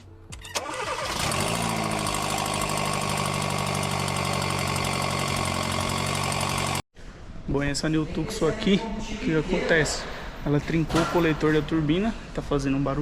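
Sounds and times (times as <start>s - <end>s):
car engine idling: 0.7s - 6.8s.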